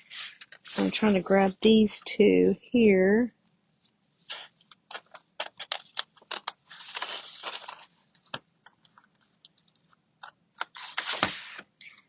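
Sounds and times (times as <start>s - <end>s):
paper crinkling: 4.2s - 12.0s.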